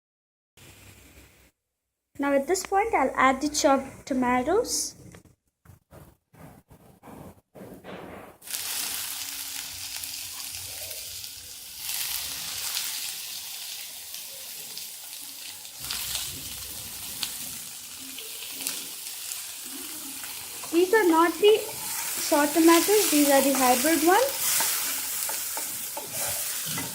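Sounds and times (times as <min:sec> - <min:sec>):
vegetables sizzling in oil: 0:08.4 - 0:26.9.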